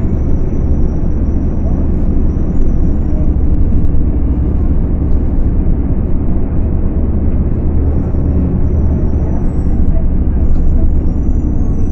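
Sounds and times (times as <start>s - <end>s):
bus diesel engine drone: 0.0s - 11.9s.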